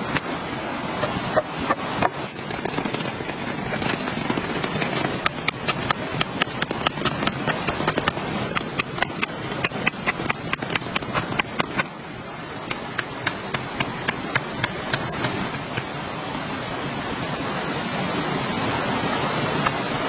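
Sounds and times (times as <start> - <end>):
steady rain: 0.0 - 20.0
drops ticking on shelter: 2.0 - 11.9, 12.7 - 15.9.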